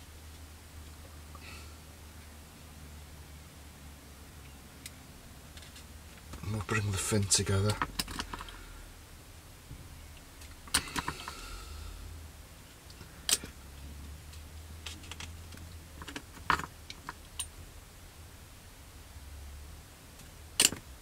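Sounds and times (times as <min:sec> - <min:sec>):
low steady hum: 0:00.0 - 0:21.0
plastic parts clicking and tapping: 0:20.6 - 0:20.8.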